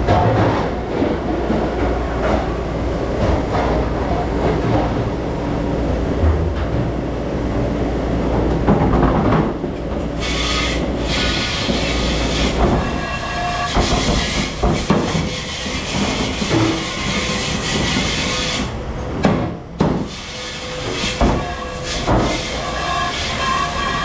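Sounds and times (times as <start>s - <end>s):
dish machine running: 8.2s - 24.0s
dishes and racks clattering: 8.6s - 20.2s, 20.9s - 24.0s.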